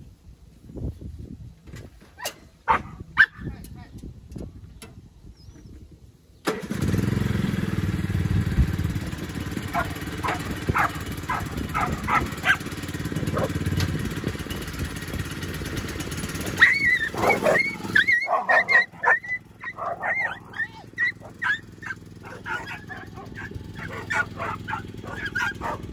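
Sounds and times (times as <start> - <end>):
dogs barking: 2.6 - 3.5, 9.7 - 13.7, 16.4 - 25.9
lawnmower engine running: 6.4 - 25.9.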